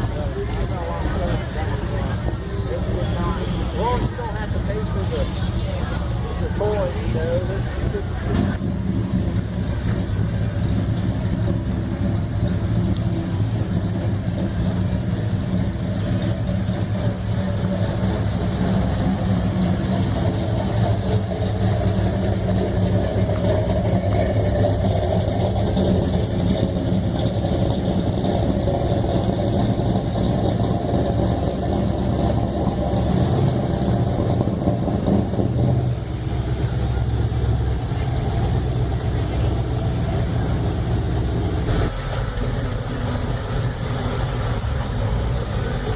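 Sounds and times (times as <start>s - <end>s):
car engines idling: 0.0s - 45.9s.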